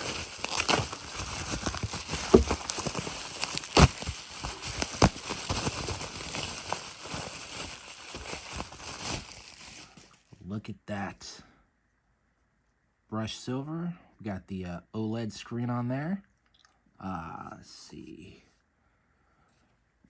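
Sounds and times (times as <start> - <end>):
packaging rustling and crinkling: 0.0 - 10.4.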